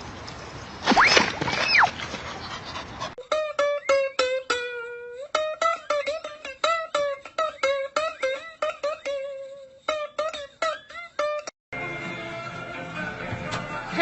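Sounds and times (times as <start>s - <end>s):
plucked string instrument: 3.2s - 14.0s.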